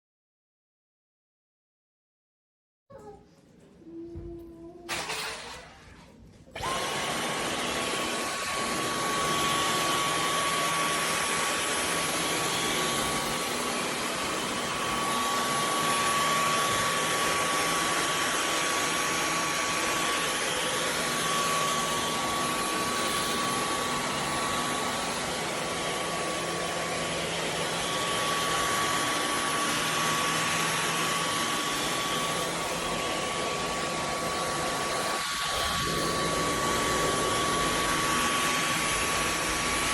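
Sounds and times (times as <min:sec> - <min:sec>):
stick vacuum running: 0:04.9 - 0:39.9.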